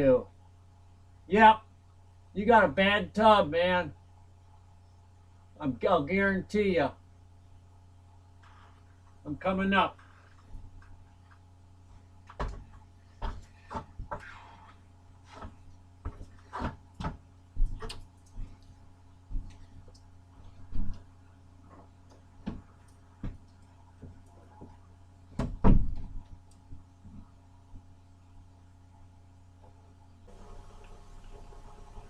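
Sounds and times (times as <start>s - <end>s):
low steady hum: 0.0s - 32.0s
loud thump: 25.4s - 26.1s.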